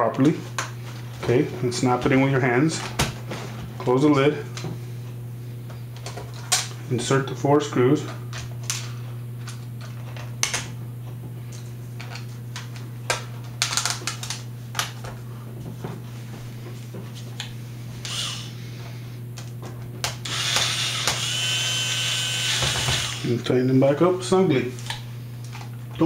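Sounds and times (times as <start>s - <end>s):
battery drill running: 18.0s - 18.6s, 20.2s - 23.4s.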